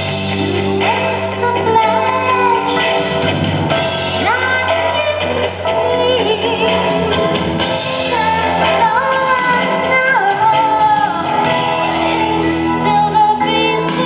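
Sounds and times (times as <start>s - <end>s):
instrumental backing music: 0.0s - 14.0s.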